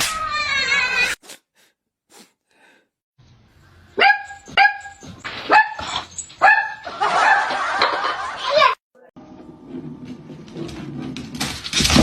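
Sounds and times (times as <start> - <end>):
dog barking: 4.0 - 7.6.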